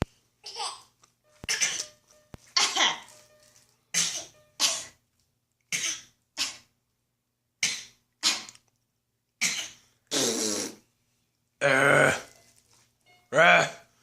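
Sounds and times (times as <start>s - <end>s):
child fake coughing: 1.5s - 1.9s, 2.6s - 3.1s, 3.9s - 5.0s, 5.7s - 6.7s, 7.6s - 8.6s, 9.4s - 10.8s.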